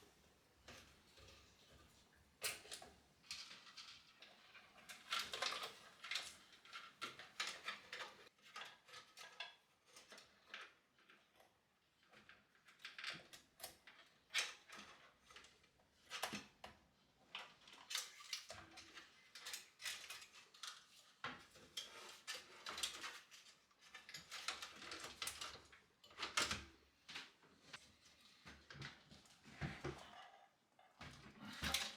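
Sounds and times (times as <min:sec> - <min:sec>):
clicks taps and rustles: 0:00.6 - 0:30.2.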